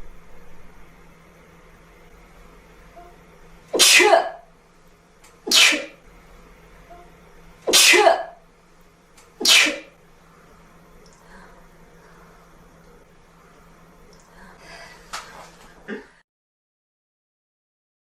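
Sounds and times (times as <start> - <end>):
woman sneezing: 3.8 - 4.4, 5.5 - 6.0, 7.7 - 8.4, 9.4 - 9.9.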